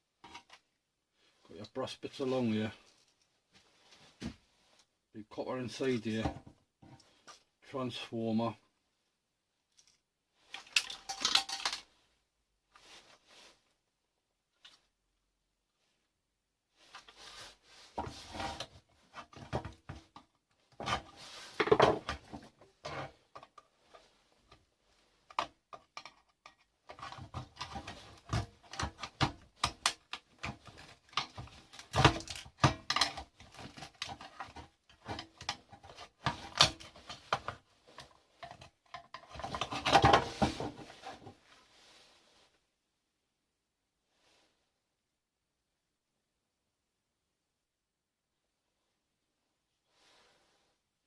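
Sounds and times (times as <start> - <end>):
small metal and plastic parts rattling: 9.7 - 12.0, 25.2 - 40.9.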